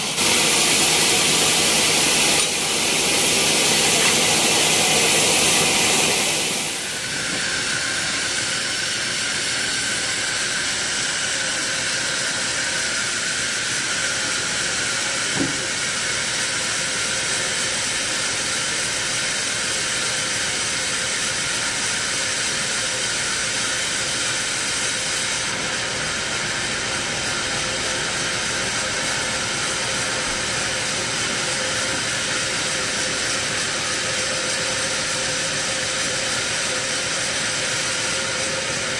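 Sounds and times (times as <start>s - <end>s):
sawmill saw cutting log: 0.0s - 9.2s
short knock: 15.3s - 15.8s.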